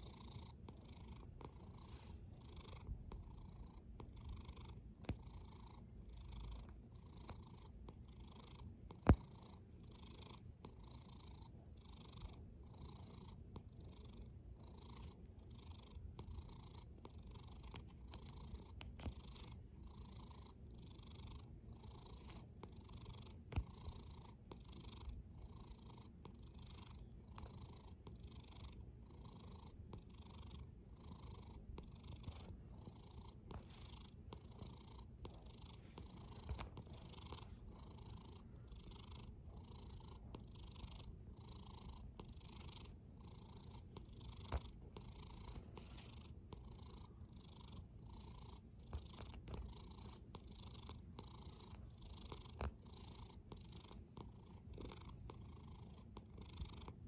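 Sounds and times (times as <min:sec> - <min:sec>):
cat snoring softly: 0:00.0 - 0:57.0
faint clicks: 0:17.6 - 0:19.5, 0:26.8 - 0:28.1.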